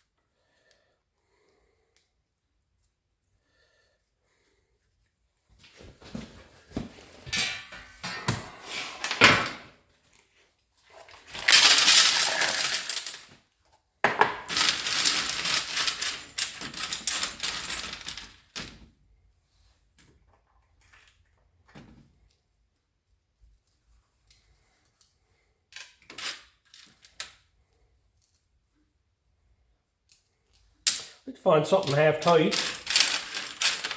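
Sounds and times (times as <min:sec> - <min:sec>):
metal parts clinking: 0:11.0 - 0:13.3, 0:14.3 - 0:18.6, 0:31.7 - 0:33.9.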